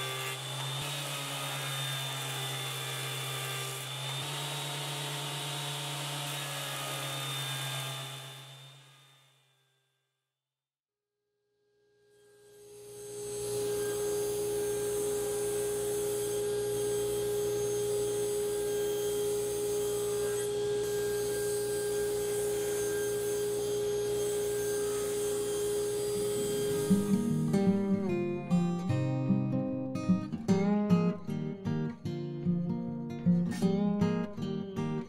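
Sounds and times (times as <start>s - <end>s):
woodworking power tool whining: 0.0s - 9.3s, 12.2s - 28.6s.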